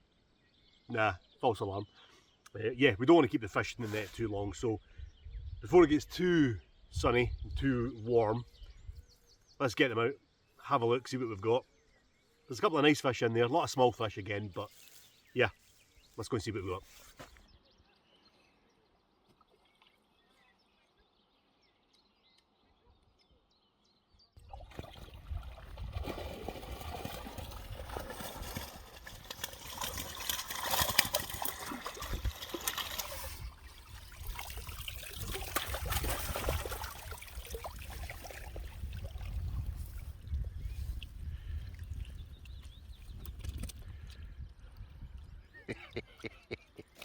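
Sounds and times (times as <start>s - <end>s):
water splashing and streaming: 24.4s - 40.2s.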